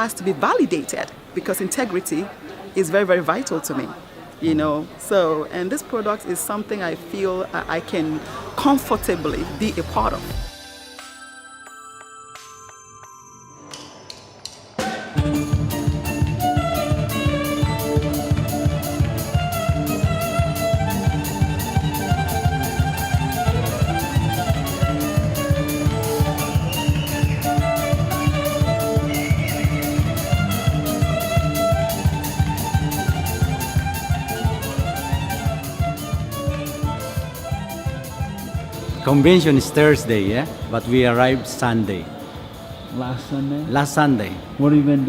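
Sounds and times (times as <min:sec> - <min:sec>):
fast beat with violin melody: 0:15.2 - 0:40.9.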